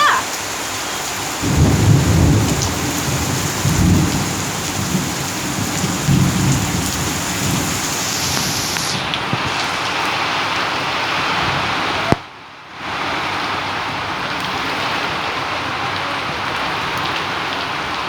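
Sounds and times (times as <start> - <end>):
heavy rain pouring: 0.0 - 18.0
thunder rumbling: 1.3 - 9.5.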